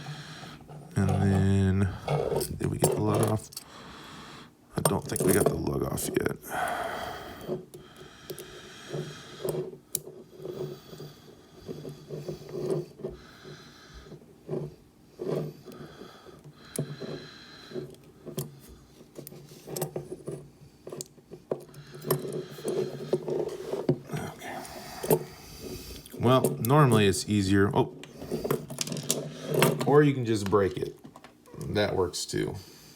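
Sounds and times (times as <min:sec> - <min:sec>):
handcuff mechanism clicking and rattling: 0:02.4 - 0:03.7.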